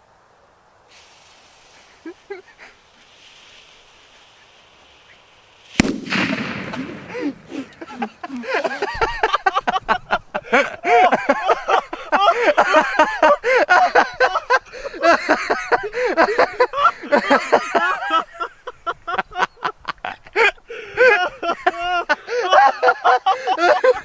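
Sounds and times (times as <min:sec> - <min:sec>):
firecracker blast: 0:05.5 - 0:08.1
people laughing and exclaiming: 0:06.1 - 0:24.0.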